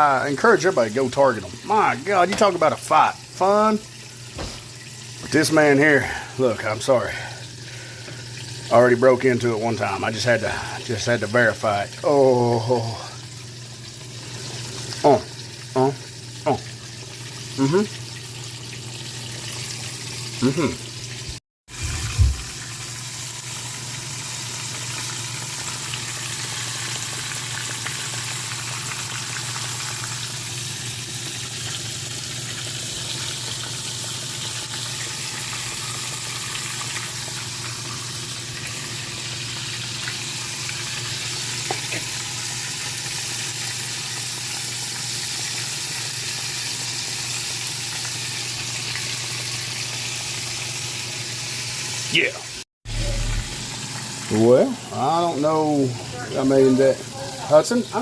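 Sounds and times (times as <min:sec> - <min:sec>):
fish frying in hot oil: 0:00.0 - 0:58.0
low hum: 0:52.9 - 0:53.8.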